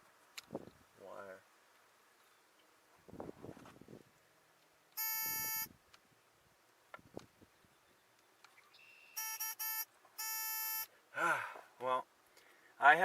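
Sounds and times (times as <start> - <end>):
circuit tester beeping: 5.0 - 5.7, 8.9 - 10.9.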